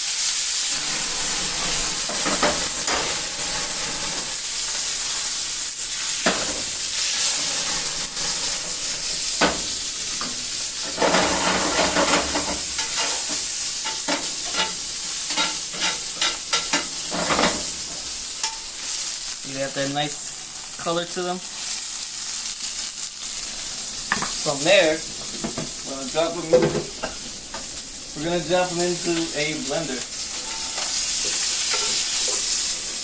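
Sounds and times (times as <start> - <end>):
chilies sizzling in hot oil: 0.0 - 33.0
utensil stirring and scraping: 6.0 - 9.5, 30.3 - 32.6.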